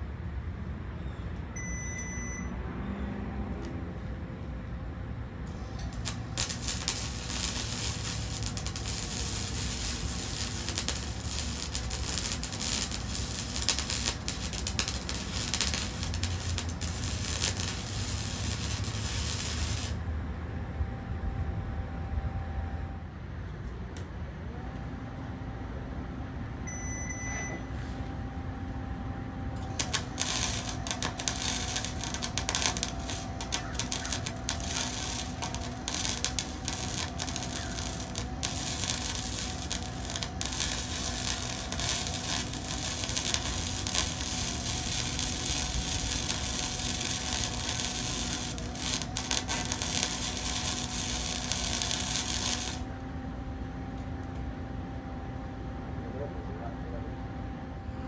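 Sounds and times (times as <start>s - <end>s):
steady hum: 0.0s - 58.0s
welding arc crackling: 5.5s - 20.1s, 29.6s - 52.9s.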